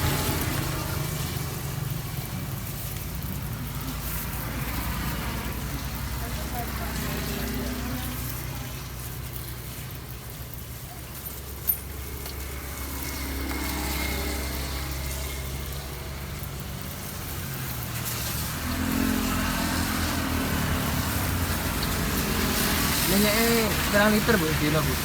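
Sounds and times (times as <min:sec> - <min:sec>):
traffic passing on street: 0:00.0 - 0:25.0.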